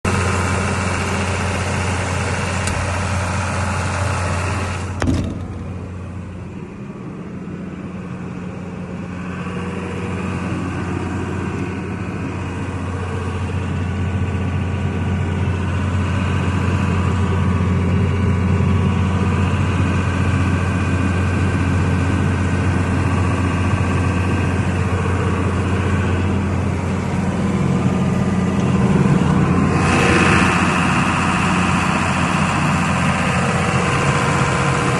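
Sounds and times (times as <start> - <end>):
diesel generator running: 0.0 - 34.9
sharp knock: 5.0 - 5.9.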